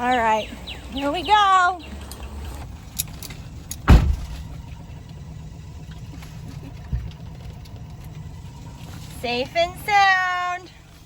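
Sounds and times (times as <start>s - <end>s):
car engine idling: 0.0s - 11.0s
thump: 3.9s - 4.5s.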